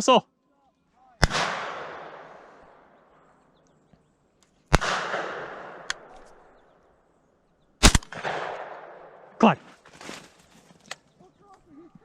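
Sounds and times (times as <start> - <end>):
shotgun shots with echo: 1.2 - 2.5, 4.7 - 6.1, 7.8 - 9.2.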